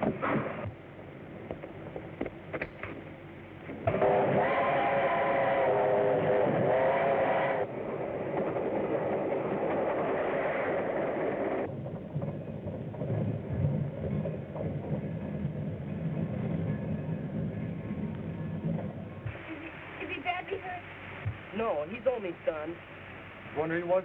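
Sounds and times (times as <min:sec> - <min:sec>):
moving train rumble: 0:00.0 - 0:24.0
steam locomotive whistle: 0:03.9 - 0:07.8.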